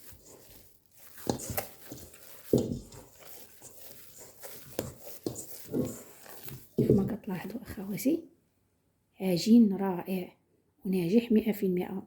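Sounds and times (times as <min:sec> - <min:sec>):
dough thumping and squishing: 0:00.0 - 0:07.5.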